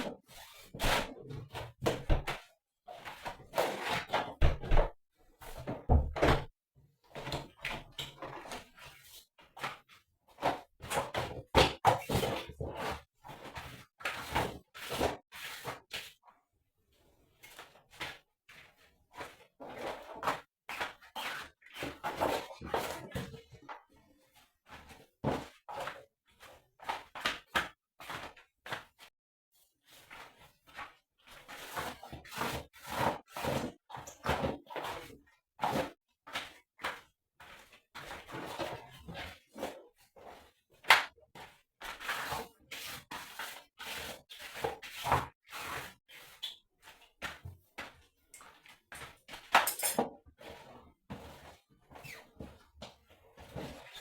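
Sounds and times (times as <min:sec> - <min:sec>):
objects knocking and clattering: 0:49.6 - 0:50.2.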